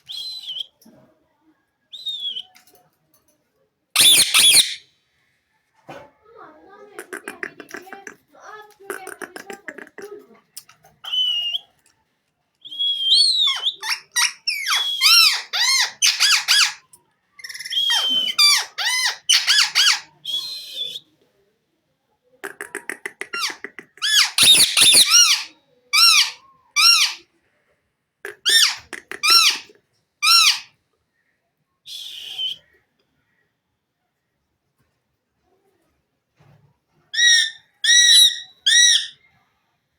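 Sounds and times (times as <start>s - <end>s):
parakeet squawking and chattering: 4.0s - 4.8s, 6.9s - 8.2s, 8.8s - 10.3s, 13.2s - 20.1s, 22.4s - 27.3s, 28.3s - 30.7s, 37.2s - 39.2s.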